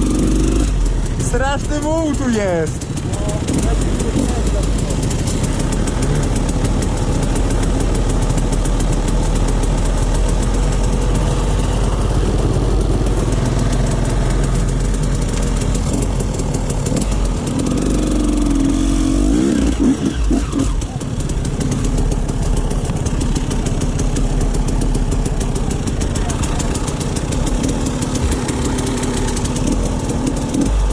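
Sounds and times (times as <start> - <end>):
dirt bike engine running: 0.0 - 30.9.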